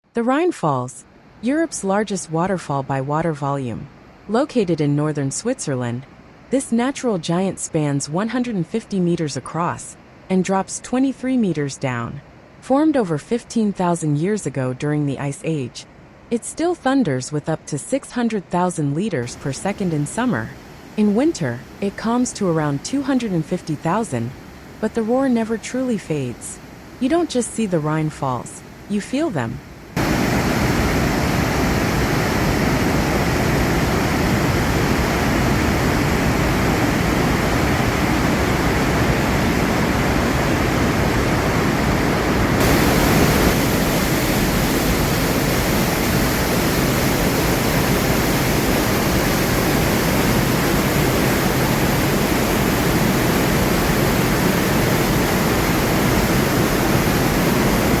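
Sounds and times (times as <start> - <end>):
waterfall roaring: 19.2 - 58.0.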